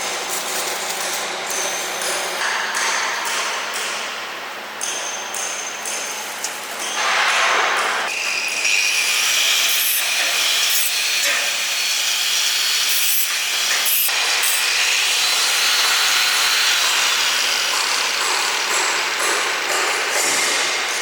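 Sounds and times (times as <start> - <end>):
power tool grinding steel: 8.1 - 20.2.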